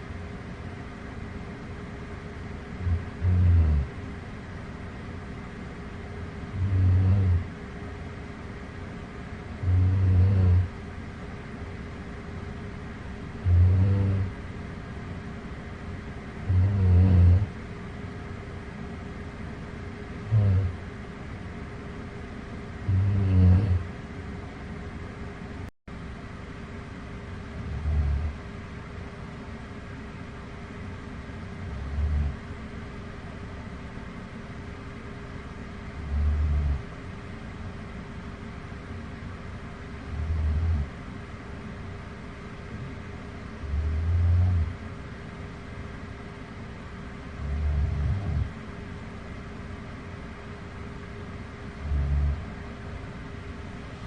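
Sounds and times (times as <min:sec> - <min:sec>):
person snoring: 0:02.8 - 0:03.9, 0:06.5 - 0:07.5, 0:09.6 - 0:10.7, 0:13.4 - 0:14.4, 0:16.4 - 0:17.5, 0:20.2 - 0:20.8, 0:22.8 - 0:23.9, 0:27.6 - 0:28.4, 0:31.6 - 0:32.4, 0:36.0 - 0:36.9, 0:40.1 - 0:40.9, 0:43.6 - 0:44.8, 0:47.4 - 0:48.5, 0:51.8 - 0:52.5.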